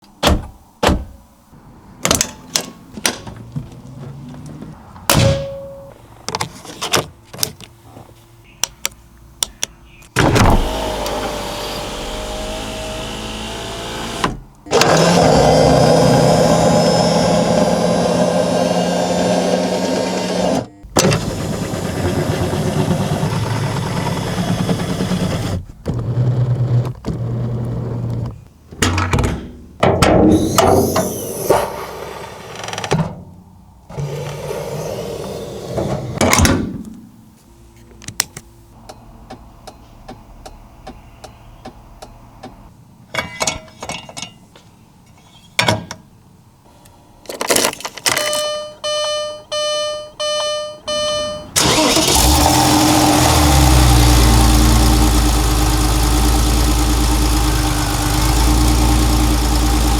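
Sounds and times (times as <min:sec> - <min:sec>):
car engine starting and running: 0:10.2 - 0:28.4, 0:33.8 - 0:36.2, 0:50.9 - 0:59.9.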